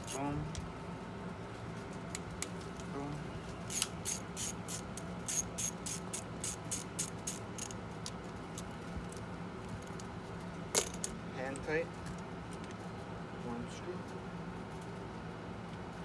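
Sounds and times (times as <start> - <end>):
socket ratchet clicking: 0.0 - 0.2, 3.7 - 8.7
low steady hum: 0.0 - 16.0.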